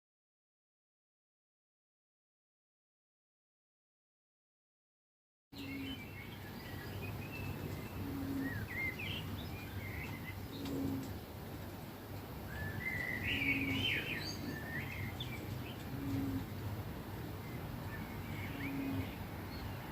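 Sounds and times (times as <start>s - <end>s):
low hooting bird call: 5.6s - 11.2s, 12.4s - 19.9s
small birds chirping: 5.6s - 19.9s.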